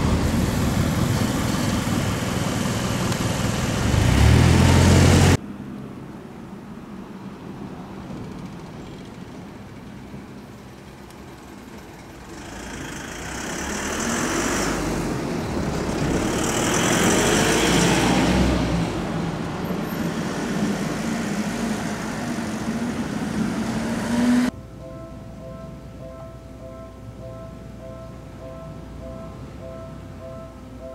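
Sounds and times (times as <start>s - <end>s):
vehicle passing: 0.0s - 5.4s, 12.2s - 24.5s.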